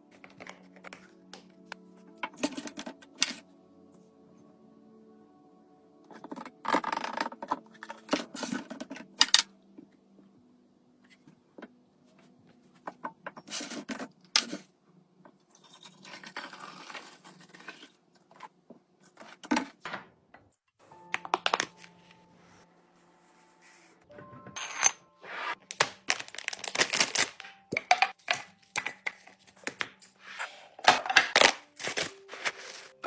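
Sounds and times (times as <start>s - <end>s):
faint background music: 0.0s - 19.9s, 20.7s - 33.0s
packaging rustling: 25.6s - 29.8s, 30.9s - 33.0s.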